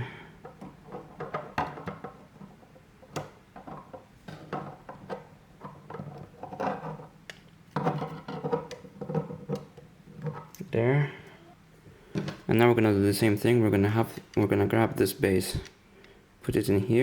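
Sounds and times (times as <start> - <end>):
plastic parts clicking and knocking: 0.0 - 10.6, 12.1 - 12.6.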